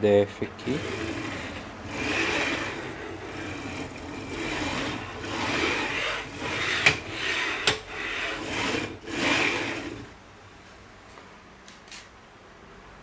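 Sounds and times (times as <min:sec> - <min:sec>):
carriage rolling on metal rails: 0:00.5 - 0:10.2.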